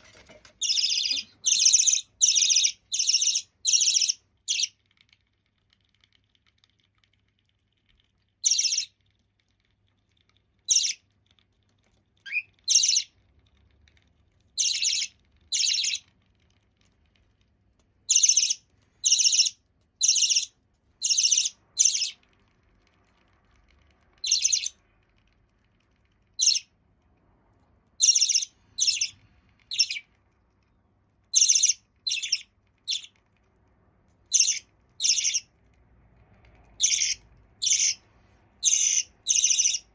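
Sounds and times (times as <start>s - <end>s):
budgerigar chick calling: 0.6s - 4.7s, 28.0s - 30.0s, 34.3s - 35.4s, 36.8s - 38.0s, 38.6s - 39.8s.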